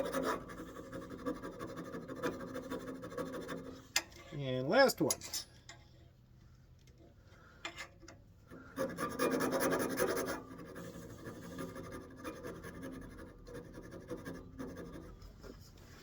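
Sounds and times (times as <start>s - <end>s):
hand rasp scraping wood: 0.0s - 3.8s, 8.8s - 15.6s.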